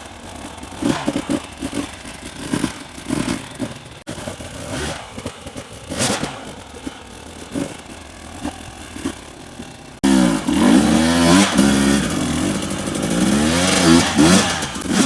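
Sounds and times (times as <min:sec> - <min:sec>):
bike clatter: 0:00.0 - 0:15.0
dirt bike engine revving: 0:00.0 - 0:15.0.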